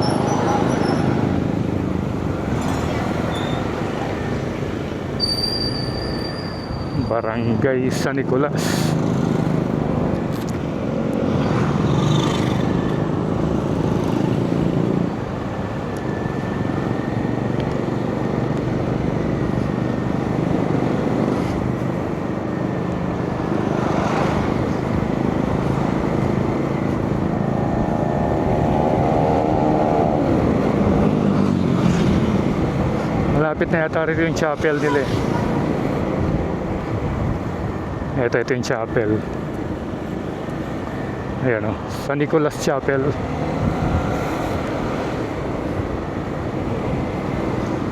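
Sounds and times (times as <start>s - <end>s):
vehicle engine and road noise: 0.0s - 47.9s.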